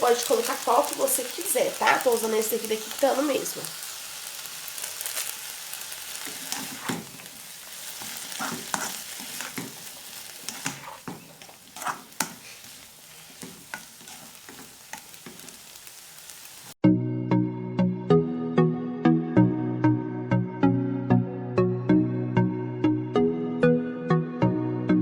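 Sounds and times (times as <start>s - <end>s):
vegetables sizzling in a pan: 0.0s - 16.8s
utensil scraping against pan: 6.2s - 15.7s.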